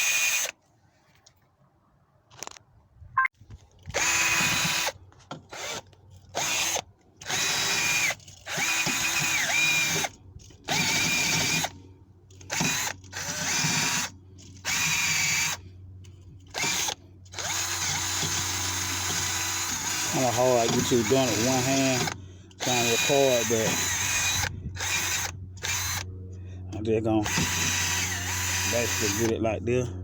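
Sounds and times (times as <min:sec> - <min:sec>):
electric drill with wire brush: 0:00.0 - 0:00.6, 0:03.9 - 0:11.8, 0:12.4 - 0:15.6, 0:16.5 - 0:26.1, 0:27.2 - 0:29.4.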